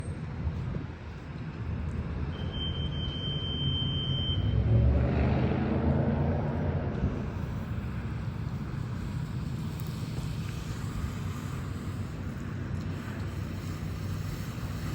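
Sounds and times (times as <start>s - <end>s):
low motor rumble: 4.4s - 14.9s.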